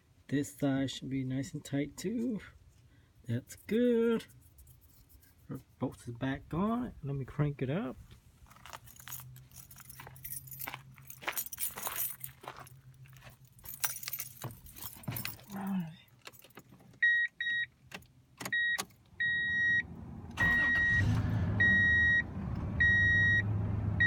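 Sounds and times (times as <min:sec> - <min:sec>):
keys jangling: 0:08.6 - 0:17.0
dashboard warning chime beeping: 0:17.0 - 0:17.8, 0:18.4 - 0:23.5
engine cranking and idling: 0:19.2 - 0:24.0.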